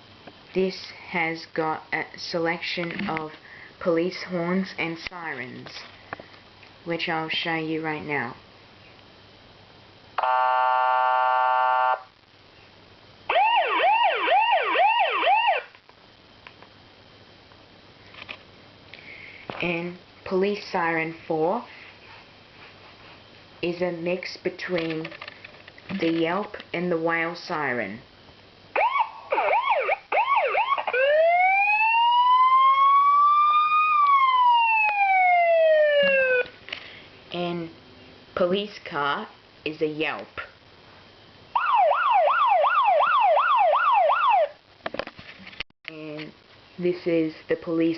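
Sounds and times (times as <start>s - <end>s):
police horn blast: 10.2s - 12.0s
up-and-down siren: 10.2s - 12.1s, 13.3s - 15.7s, 28.8s - 36.5s, 41.6s - 44.6s.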